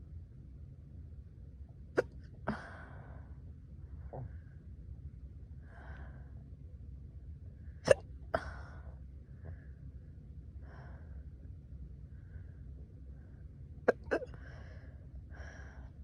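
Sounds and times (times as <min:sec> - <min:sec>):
soft breathy sounds: 0:10.6 - 0:11.4, 0:12.1 - 0:16.0
person hiccupping: 0:13.9 - 0:14.3.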